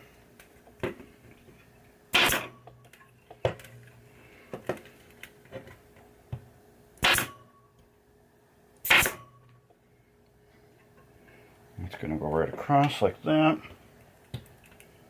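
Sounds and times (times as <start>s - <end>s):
short loud bursts: 8.8s - 9.3s.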